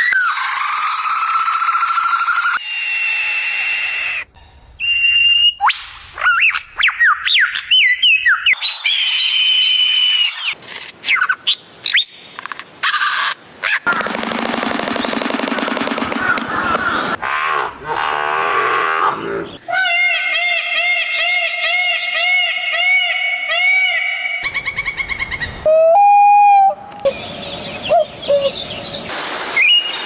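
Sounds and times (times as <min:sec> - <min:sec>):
swooping whistled calls: 0:04.8 - 0:13.8, 0:24.2 - 0:30.0.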